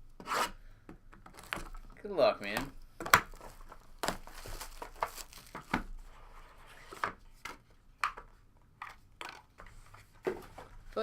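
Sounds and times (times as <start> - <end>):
plastic wrapping crinkling and tearing: 3.3 - 5.9.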